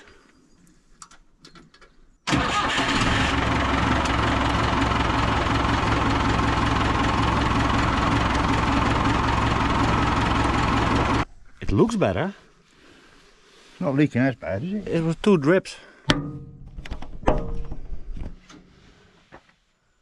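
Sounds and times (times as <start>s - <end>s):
backhoe engine running: 2.3s - 11.2s.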